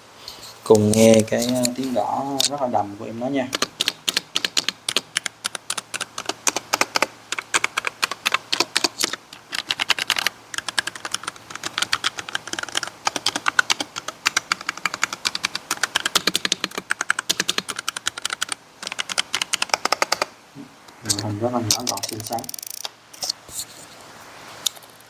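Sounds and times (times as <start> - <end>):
mechanical keyboard typing: 3.5 - 20.3, 21.1 - 23.3.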